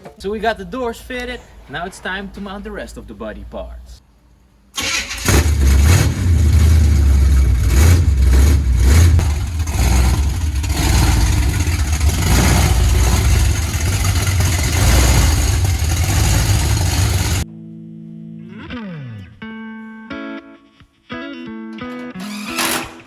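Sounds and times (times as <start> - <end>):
engine throttle blips and idle: 4.8 - 17.4.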